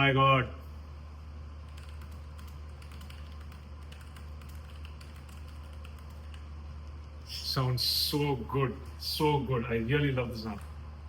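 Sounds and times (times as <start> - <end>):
mechanical keyboard typing: 1.7 - 6.4.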